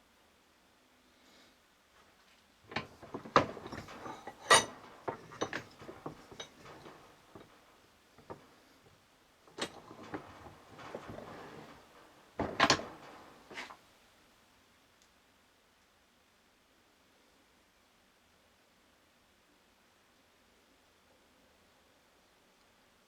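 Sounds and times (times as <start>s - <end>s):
metal parts clicking and knocking: 2.7s - 8.4s, 9.5s - 13.8s.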